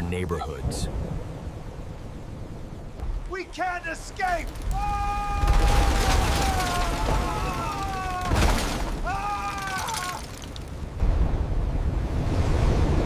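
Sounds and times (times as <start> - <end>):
water: 0.0 - 13.0
storm wind roaring: 0.4 - 13.0
crash: 4.2 - 11.6
person screaming: 4.7 - 8.4, 9.0 - 10.3.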